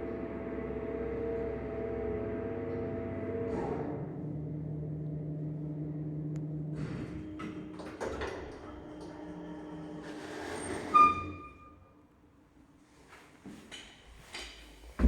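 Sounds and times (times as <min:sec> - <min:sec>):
lift machinery electric hum: 0:00.0 - 0:10.9.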